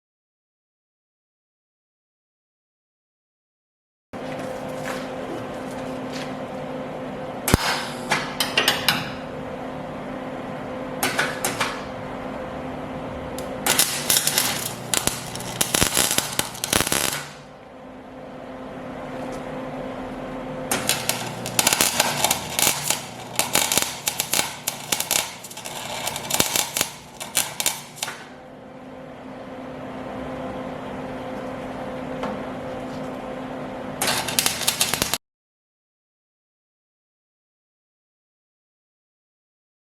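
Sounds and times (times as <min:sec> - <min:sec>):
steady machine hum: 0:04.2 - 0:35.2
sharp crackling or hammering: 0:13.4 - 0:17.4, 0:20.7 - 0:28.3, 0:34.0 - 0:35.2.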